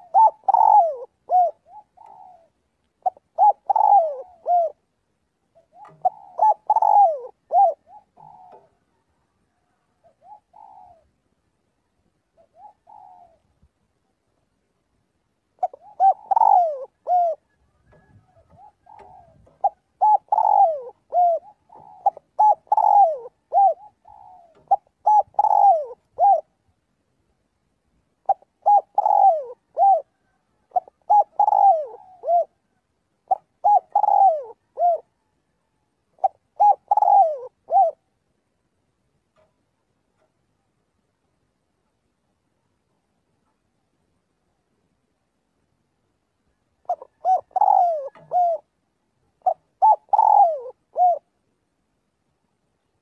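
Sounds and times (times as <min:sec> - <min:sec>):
dove cooing: 0:00.0 - 0:11.2, 0:12.3 - 0:13.6, 0:15.6 - 0:26.7, 0:28.2 - 0:38.2, 0:46.8 - 0:51.4.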